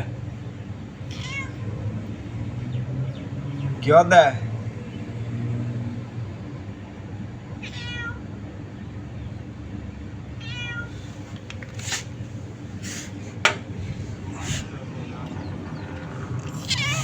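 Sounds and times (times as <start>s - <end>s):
cat meowing: 1.0s - 1.8s, 7.6s - 8.3s, 10.4s - 11.1s, 16.4s - 17.0s
steady low hum: 8.3s - 17.0s.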